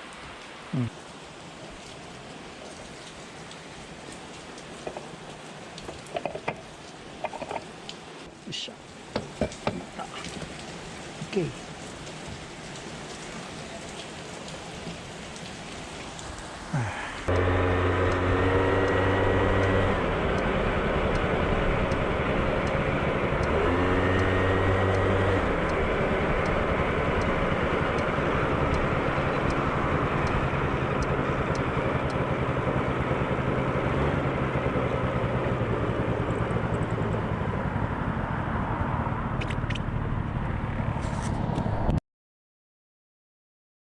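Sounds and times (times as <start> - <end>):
steady rain-like hiss: 0.0 - 20.2
scooter engine starting and idling: 17.3 - 37.9.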